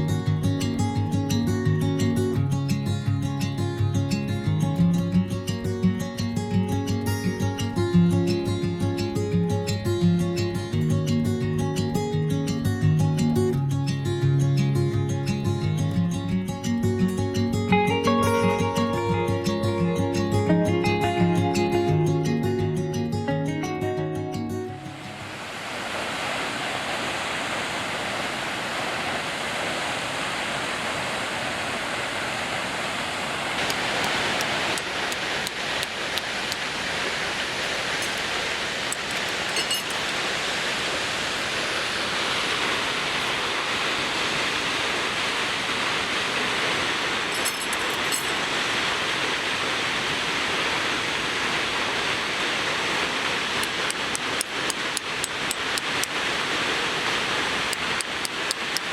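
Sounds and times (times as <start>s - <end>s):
waterfall rushing: 15.4s - 58.9s.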